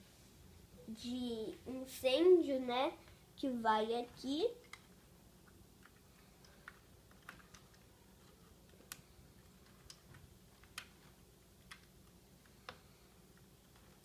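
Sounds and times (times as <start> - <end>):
plastic pieces clicking: 4.6 - 14.0.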